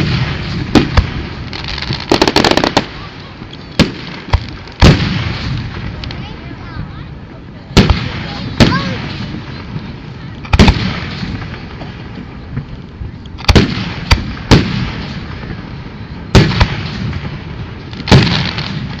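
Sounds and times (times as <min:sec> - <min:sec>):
fireworks booming: 0:00.0 - 0:19.0.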